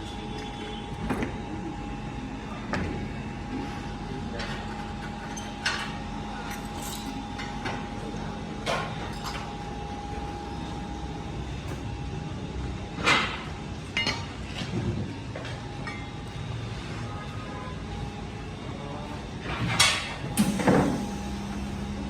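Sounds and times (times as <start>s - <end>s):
machine hum: 20.3s - 22.0s.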